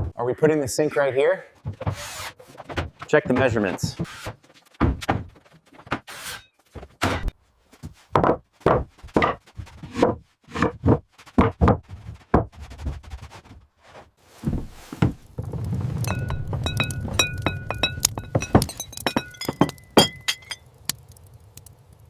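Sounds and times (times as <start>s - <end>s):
irregular knocks and thuds: 1.6s - 4.1s, 4.8s - 5.5s, 7.1s - 13.6s, 14.4s - 19.8s.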